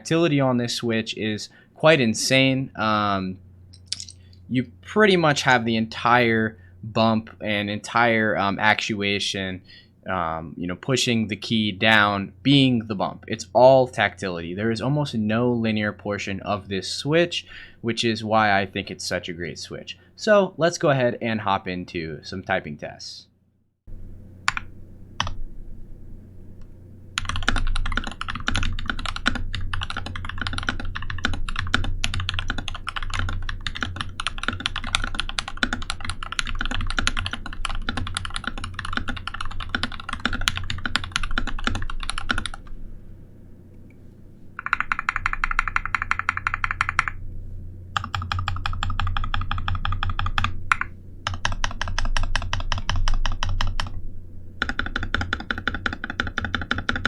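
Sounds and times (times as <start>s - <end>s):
typing on mechanical keyboard: 27.2s - 42.7s, 44.6s - 47.2s, 48.0s - 54.0s, 54.6s - 57.0s.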